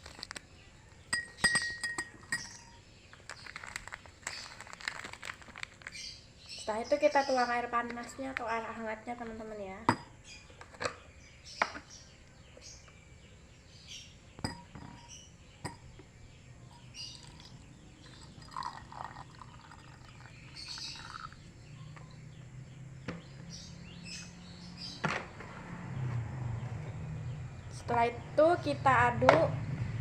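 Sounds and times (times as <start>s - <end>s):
glass clicks: 1.1s - 2.6s, 14.4s - 15.0s
water poured into a glass: 17.0s - 21.5s.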